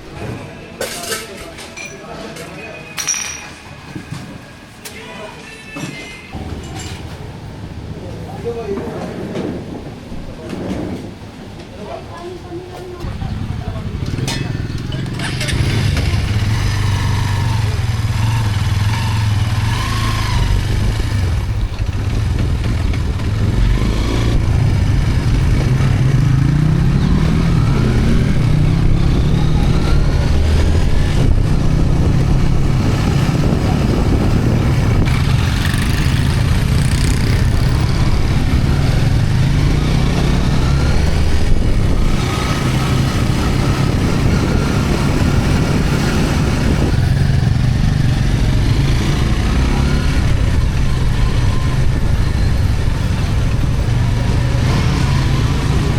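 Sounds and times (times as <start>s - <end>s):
motorcycle engine revving: 13.0s - 55.9s.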